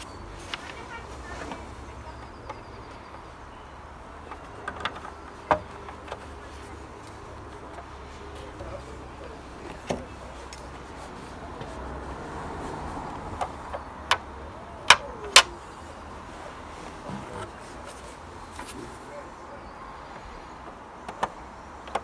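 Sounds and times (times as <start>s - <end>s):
sharp clicks and knocks: 4.1s - 8.0s, 13.1s - 15.6s, 20.6s - 22.0s.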